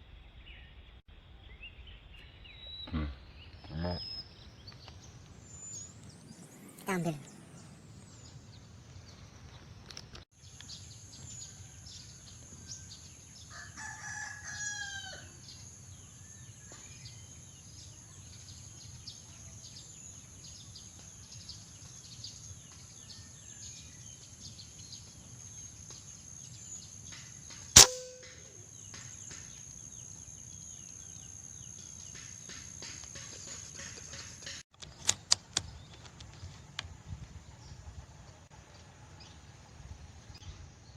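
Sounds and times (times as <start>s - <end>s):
rooster crowing: 12.8s - 15.5s
sharp crack: 27.8s - 28.6s.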